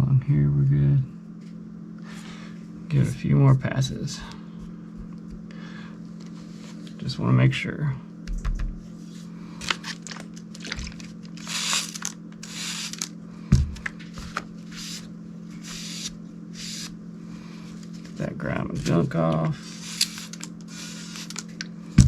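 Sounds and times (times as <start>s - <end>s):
knife scraping on whetstone: 19.6s - 21.4s.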